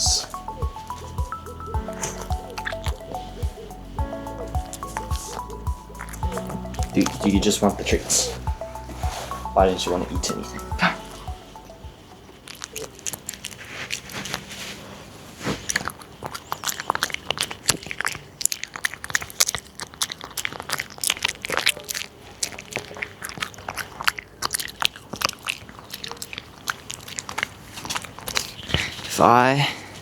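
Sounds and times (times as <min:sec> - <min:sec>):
dog crunching dry treats: 0:12.4 - 0:29.2.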